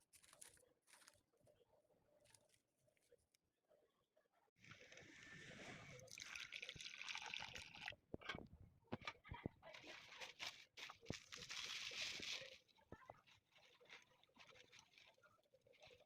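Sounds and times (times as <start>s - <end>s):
liquid pouring and sloshing: 4.8s - 8.6s, 9.6s - 16.0s.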